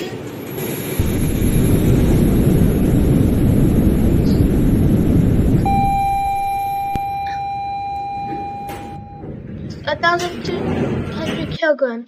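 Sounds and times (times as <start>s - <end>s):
elevator cab rumbling: 1.0s - 11.6s
steady electronic beep tone: 5.6s - 9.4s.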